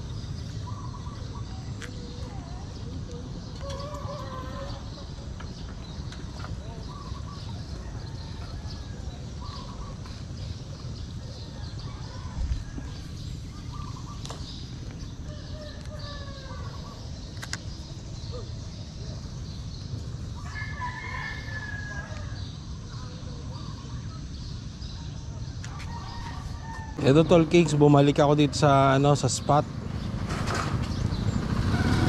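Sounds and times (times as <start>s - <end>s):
rooster crowing: 20.4s - 22.4s.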